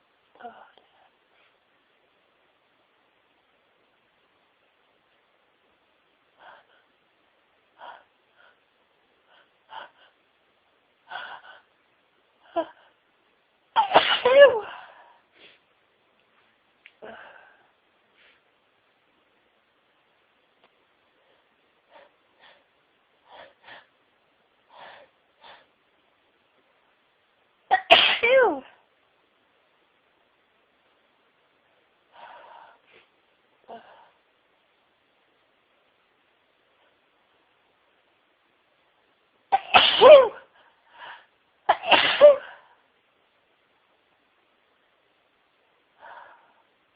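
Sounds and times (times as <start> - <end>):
woman sneezing: 13.8 - 14.9, 27.7 - 28.7, 39.6 - 40.5, 41.7 - 42.6.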